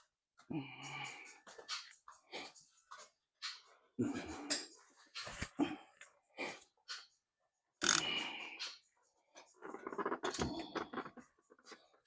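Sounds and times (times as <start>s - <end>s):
socket wrench clicking: 7.8s - 8.1s.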